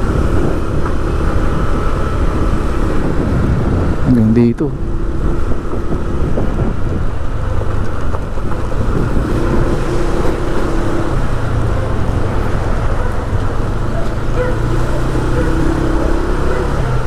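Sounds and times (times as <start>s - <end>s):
vehicle engine running: 0.0s - 17.0s
wind noise on microphone: 0.0s - 17.0s.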